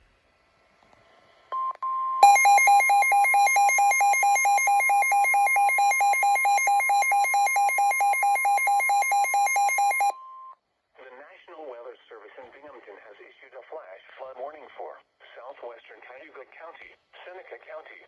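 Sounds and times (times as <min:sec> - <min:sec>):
steady high alert tone: 0:02.2 - 0:10.1
pulsing lower beep: 0:02.2 - 0:10.2
short beep: 0:02.2 - 0:10.5.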